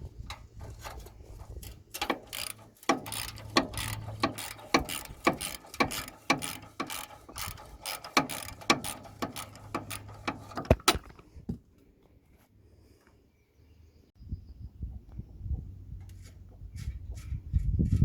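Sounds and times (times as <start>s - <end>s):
socket ratchet wrench clicking: 1.6s - 11.1s.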